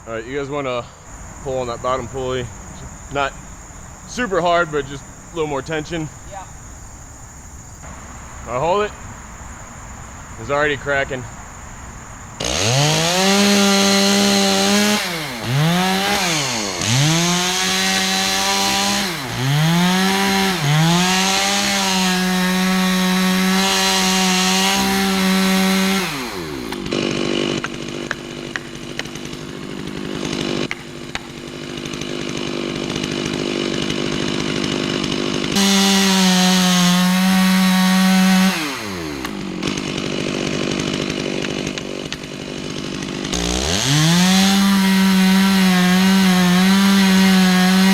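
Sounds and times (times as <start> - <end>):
chainsaw cutting and idling: 11.9 - 47.9.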